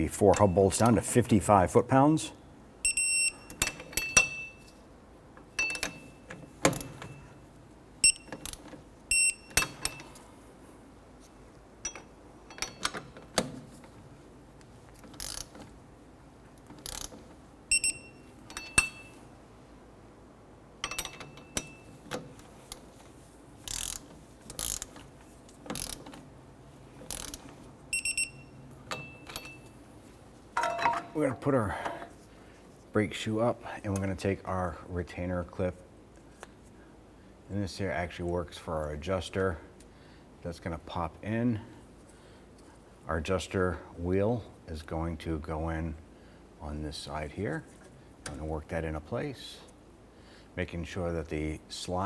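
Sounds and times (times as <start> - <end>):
torque wrench ratcheting: 15.1 - 15.5, 16.8 - 17.1, 23.6 - 25.0, 25.7 - 26.2, 27.1 - 27.4.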